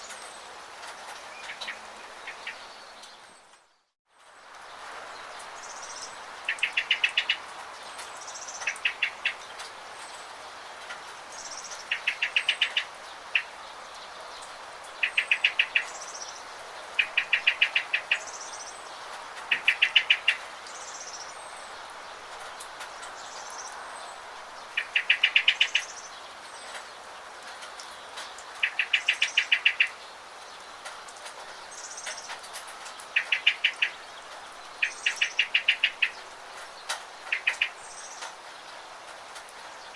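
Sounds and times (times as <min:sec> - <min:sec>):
steady rain: 0:00.0 - 0:39.9
songbird rapid trill: 0:34.7 - 0:36.2.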